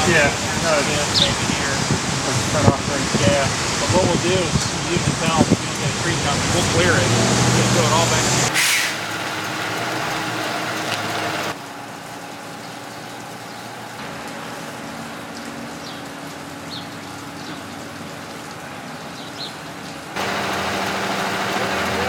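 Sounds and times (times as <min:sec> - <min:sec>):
low engine-like hum: 0:20.2 - 0:22.0.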